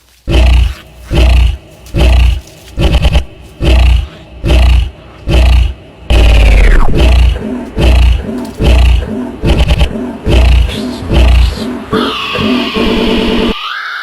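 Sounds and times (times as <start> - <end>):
bird screaming: 11.9 - 14.0.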